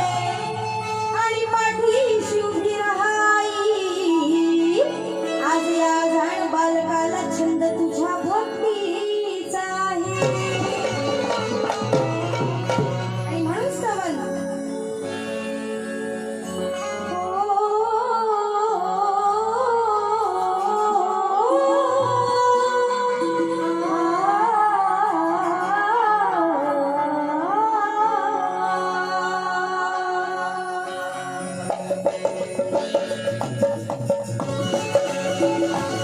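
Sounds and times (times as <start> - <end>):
woman singing wordless melody: 0.0 - 11.2, 16.8 - 31.4
drums: 9.9 - 14.2, 31.5 - 36.0.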